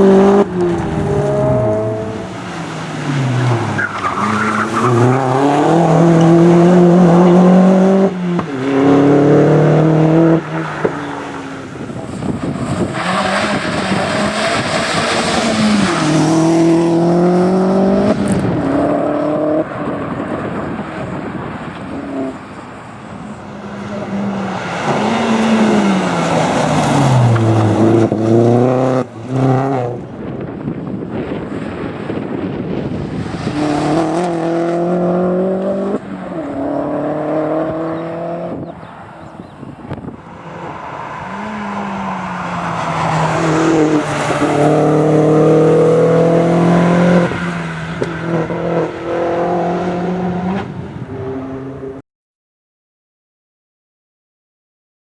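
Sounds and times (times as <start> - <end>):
race car engine revving: 0.0 - 52.0.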